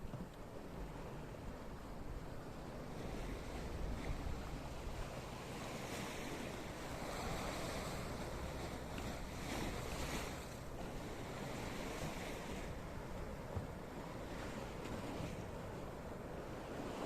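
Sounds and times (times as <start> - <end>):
sea waves breaking on shore: 0.0 - 17.0
wind buffeting microphone: 0.0 - 17.0.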